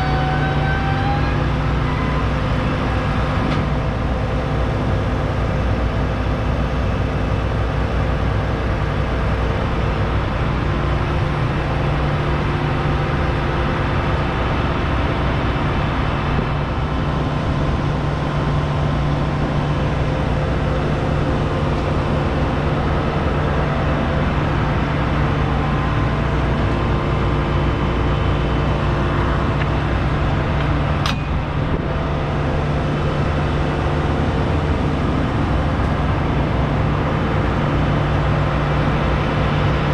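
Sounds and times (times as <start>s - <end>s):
diesel engine humming: 0.0s - 39.9s.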